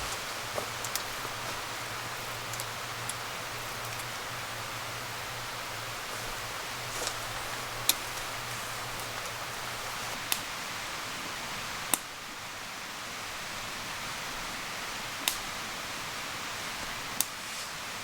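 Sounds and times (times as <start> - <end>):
wood popping in fire: 0.0 - 10.5
campfire hissing: 0.0 - 18.0.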